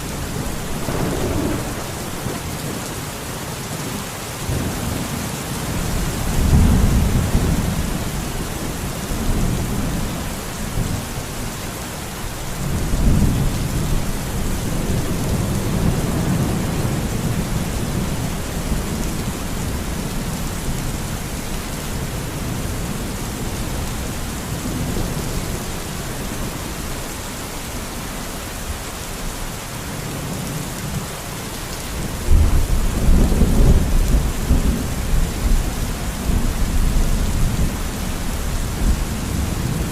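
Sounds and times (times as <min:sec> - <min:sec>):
thunder rumbles: 0:00.0 - 0:02.9, 0:05.7 - 0:11.4, 0:32.0 - 0:39.9
steady rain falling: 0:00.0 - 0:39.9.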